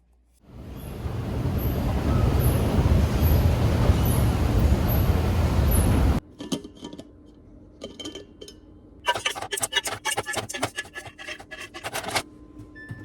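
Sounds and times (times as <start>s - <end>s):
rubbing or scraping strokes: 9.1s - 12.2s.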